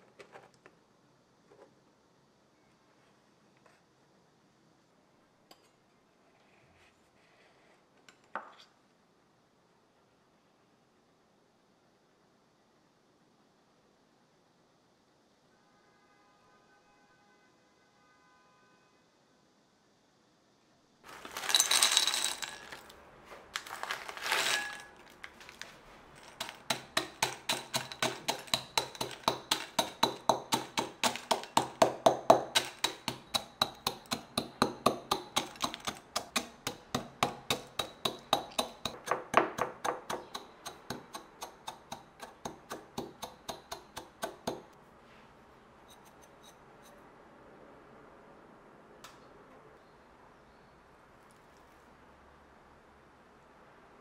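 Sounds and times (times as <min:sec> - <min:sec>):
rustling scrapes: 0:21.1 - 0:31.8
hard taps from food preparation: 0:26.2 - 0:44.7.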